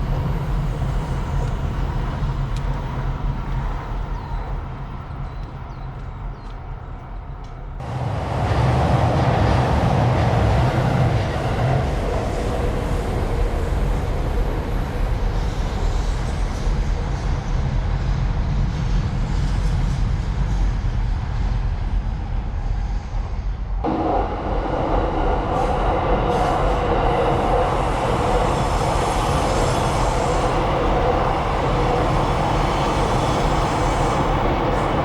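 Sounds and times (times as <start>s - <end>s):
low traffic hum: 0.0s - 16.8s
train rushing past: 7.6s - 35.0s.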